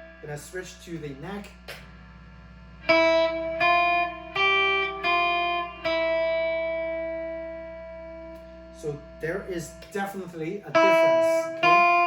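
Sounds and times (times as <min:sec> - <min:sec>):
low steady hum: 0:00.0 - 0:12.0
clean electric guitar notes: 0:02.8 - 0:12.0.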